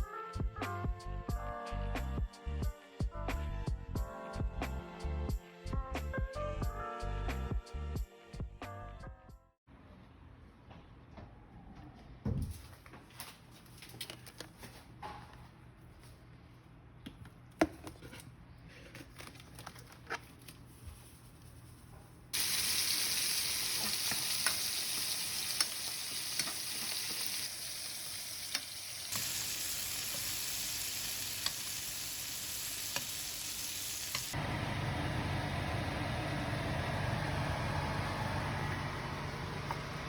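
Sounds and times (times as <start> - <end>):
food sizzling in a frying pan: 22.4 - 34.4.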